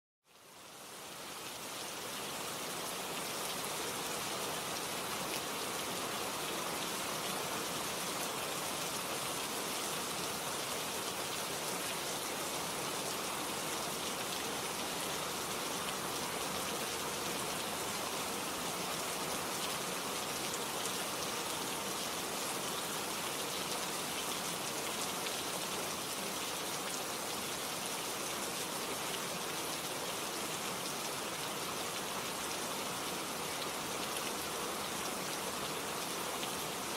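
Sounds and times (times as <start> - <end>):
heavy rainfall: 0.3 - 36.9.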